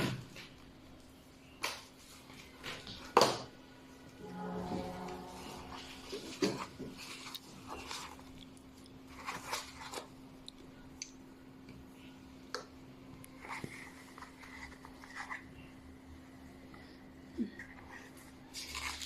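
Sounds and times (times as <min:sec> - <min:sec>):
steady low hum: 0:00.0 - 0:09.2.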